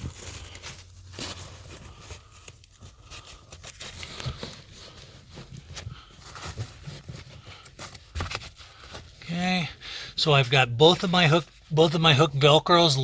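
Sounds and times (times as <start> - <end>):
fabric rustling and scraping: 0.0 - 9.2.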